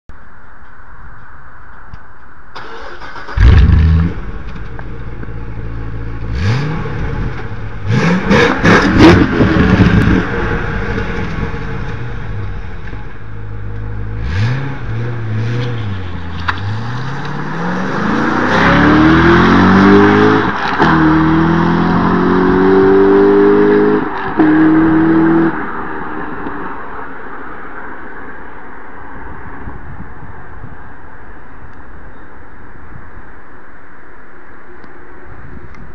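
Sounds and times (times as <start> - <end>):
sports car engine revving: 3.3 - 25.6.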